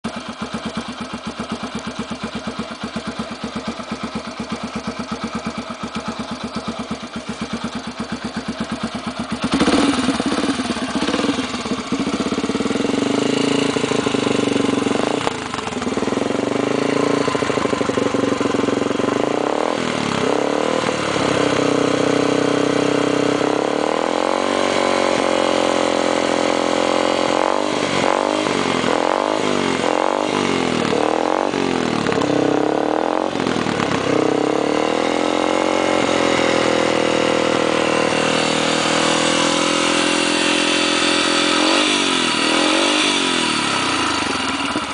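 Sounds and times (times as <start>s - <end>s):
motorcycle engine idling and revving: 0.0s - 44.9s.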